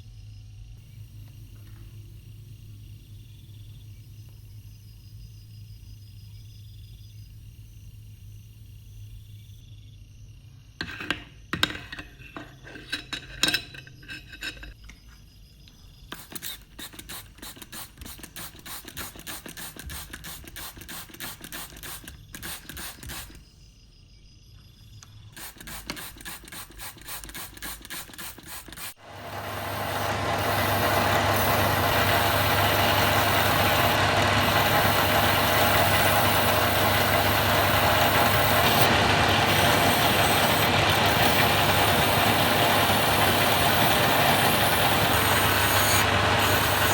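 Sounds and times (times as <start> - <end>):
power tool motor running: 16.1 - 23.5, 25.3 - 46.9
filing strokes on metal: 25.4 - 46.9.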